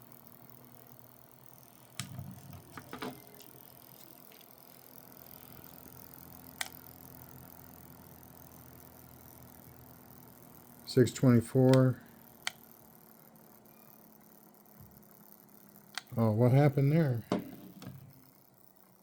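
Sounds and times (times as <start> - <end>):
motor humming faintly: 0.0 - 19.0
sharp clicks and knocks: 2.0 - 3.6.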